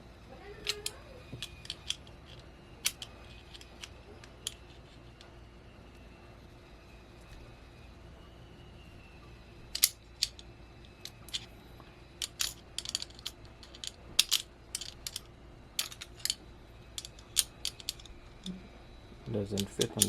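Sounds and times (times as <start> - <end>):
small metal hardware clinking: 0.6 - 5.3, 9.7 - 11.5, 12.1 - 18.6, 19.4 - 20.0.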